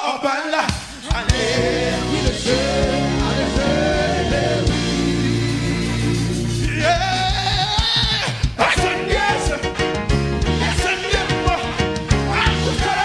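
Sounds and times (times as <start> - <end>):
person singing gospel: 0.0 - 13.0
sustained low bass: 1.3 - 7.7.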